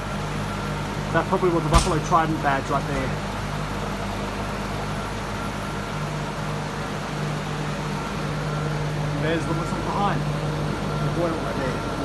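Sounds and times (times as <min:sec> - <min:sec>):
cooler fans humming: 0:00.0 - 0:04.7.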